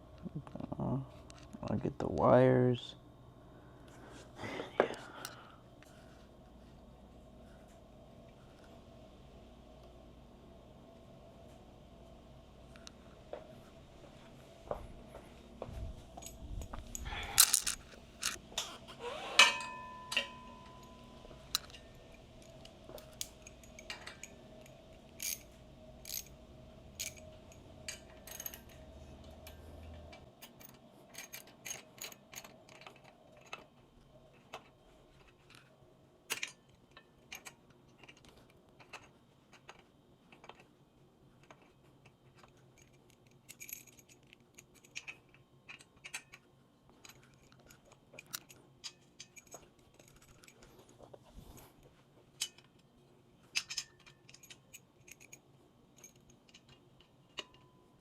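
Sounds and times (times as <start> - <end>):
faint low hum: 0.0 - 58.0
metal tools clicking and clinking: 16.2 - 18.7, 19.3 - 35.7, 36.3 - 40.7, 41.4 - 51.0, 52.4 - 57.8
ringing metallic clink: 19.4 - 22.0.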